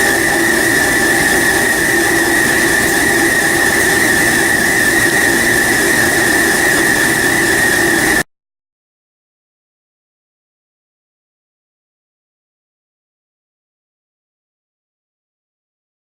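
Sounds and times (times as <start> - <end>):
loud mechanical noise with whine: 0.0 - 8.2.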